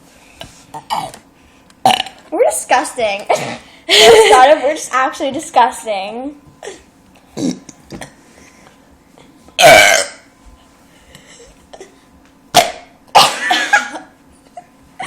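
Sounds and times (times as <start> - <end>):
loud burps: 0.8 - 1.2, 1.8 - 2.2, 3.3 - 3.6, 7.4 - 8.1, 9.6 - 10.3, 12.5 - 13.6.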